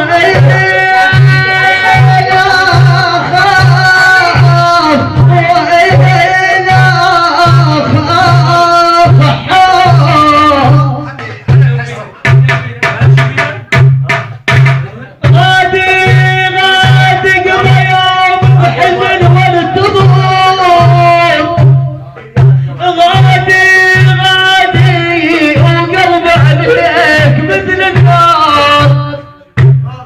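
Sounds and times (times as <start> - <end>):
wavering melody over low beat: 0.0 - 13.4
sharp drum hits: 0.0 - 30.0.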